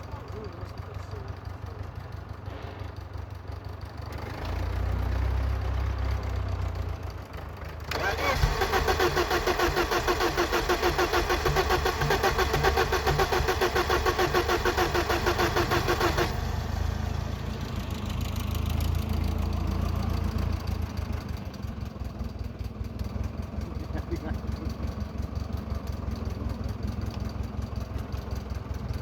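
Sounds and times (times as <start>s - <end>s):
starter motor cranking engine: 7.8s - 17.0s.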